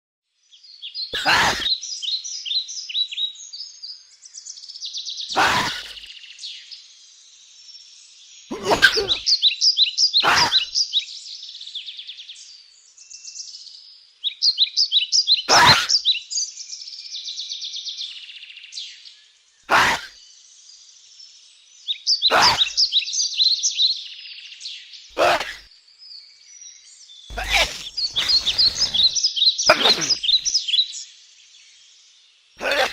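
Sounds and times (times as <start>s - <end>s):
small bird chirping: 0.6s - 32.2s
bird sneezing: 1.2s - 1.8s, 5.3s - 6.1s, 8.5s - 9.2s, 10.2s - 10.7s, 15.5s - 16.0s, 19.7s - 20.2s, 22.3s - 22.8s, 25.2s - 25.7s, 27.3s - 30.5s, 32.6s - 32.9s.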